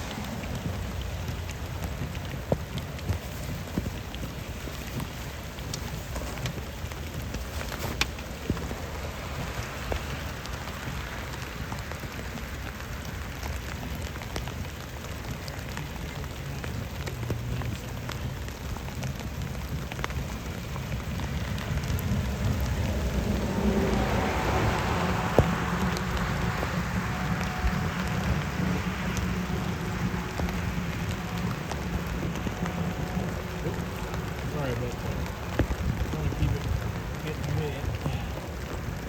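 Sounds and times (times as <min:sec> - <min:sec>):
rain falling on a vehicle: 0:00.0 - 0:39.0
sharp ticks of raindrops: 0:00.0 - 0:39.0.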